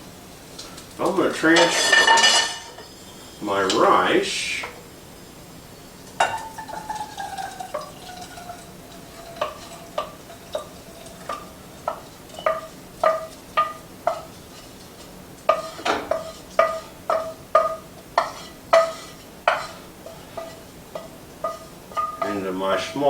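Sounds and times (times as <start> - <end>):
utensil knocking metal saucepan: 6.2 - 14.3, 15.5 - 19.8, 20.4 - 22.4.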